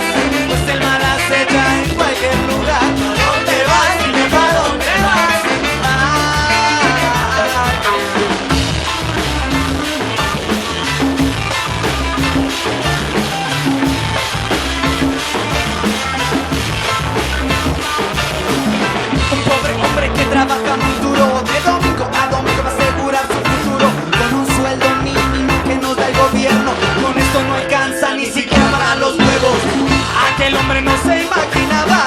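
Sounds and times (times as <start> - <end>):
reggae band playing: 0.0 - 32.0
gliding lead melody: 3.1 - 26.0.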